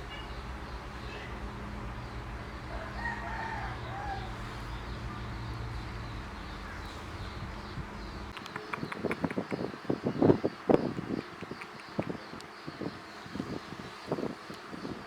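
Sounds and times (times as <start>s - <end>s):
steady low hum: 0.0s - 8.7s
drawn-out animal call: 0.0s - 9.4s
sharp clicks: 8.3s - 9.6s, 11.0s - 12.5s.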